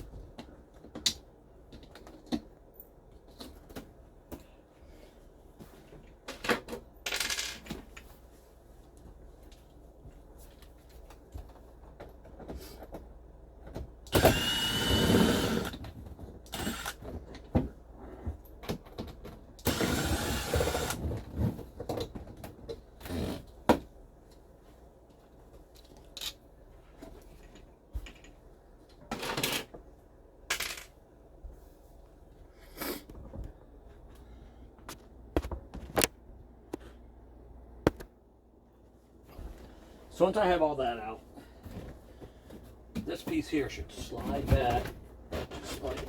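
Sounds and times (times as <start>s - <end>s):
cordless drill running: 14.1s - 15.8s, 16.5s - 17.0s, 19.6s - 21.0s.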